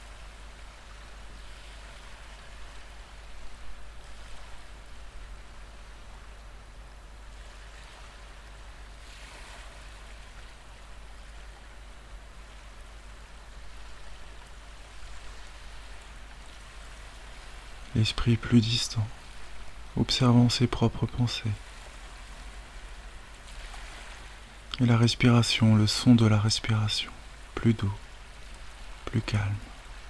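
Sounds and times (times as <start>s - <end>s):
ocean surf washing: 12.5s - 30.0s.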